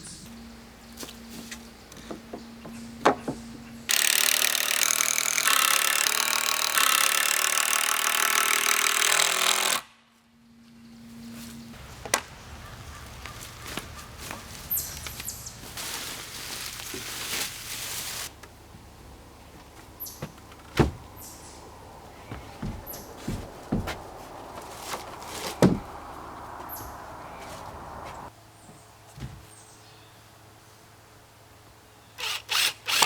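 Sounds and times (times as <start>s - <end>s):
wood knocks: 2.0s - 3.6s, 20.2s - 21.2s, 22.3s - 27.0s
impact driver hammering screw: 32.2s - 33.0s.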